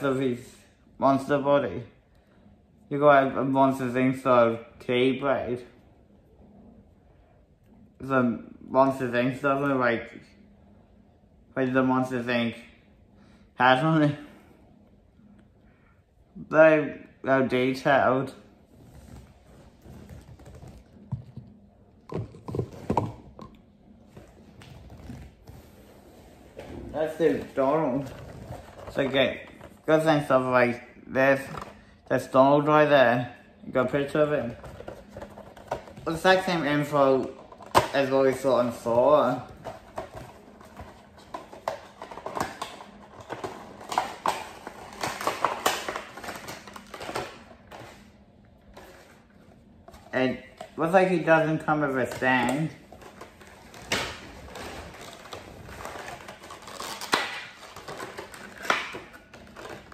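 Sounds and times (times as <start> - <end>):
packaging clicks and rustles: 34.4 - 48.1, 52.0 - 59.9.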